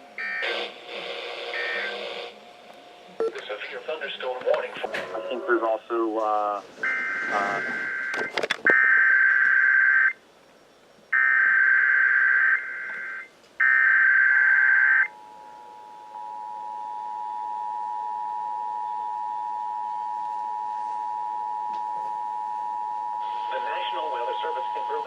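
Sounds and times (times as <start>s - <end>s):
warning alarm tone: 0.2s - 0.7s, 1.4s - 2.2s, 6.8s - 10.2s, 11.2s - 25.0s.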